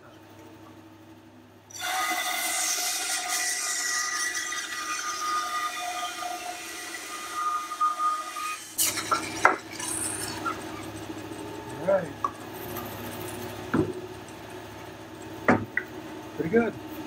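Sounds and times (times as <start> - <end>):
bandsaw cutting wood: 1.7 - 10.9
sharp wooden knocks: 13.7 - 14.0, 15.4 - 15.9.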